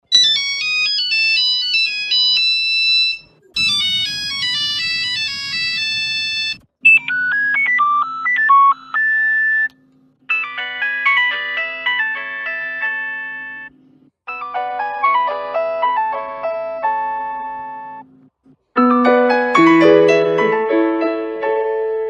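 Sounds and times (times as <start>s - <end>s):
mobile phone ringtones: 0.2s - 9.7s, 10.3s - 13.7s.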